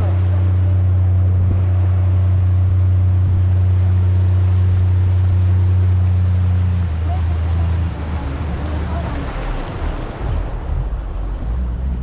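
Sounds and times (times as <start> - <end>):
motorboat engine running: 0.0 - 12.0.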